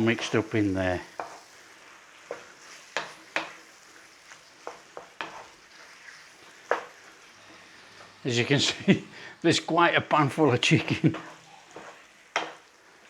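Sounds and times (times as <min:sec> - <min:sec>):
chicken sizzling in a pan: 0:00.0 - 0:13.0
utensil knocking against pan: 0:11.8 - 0:12.6.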